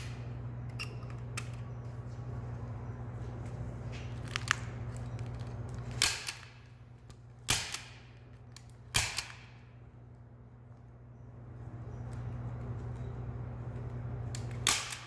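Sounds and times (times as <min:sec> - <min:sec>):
staple gun firing: 0:07.5 - 0:08.0, 0:09.0 - 0:09.6, 0:14.4 - 0:15.0.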